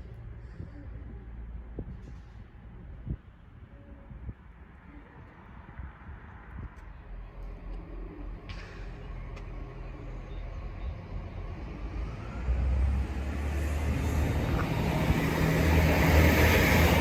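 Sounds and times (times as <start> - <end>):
diesel train engine hum: 0.0 - 17.0
train wheels on rails: 13.2 - 17.0.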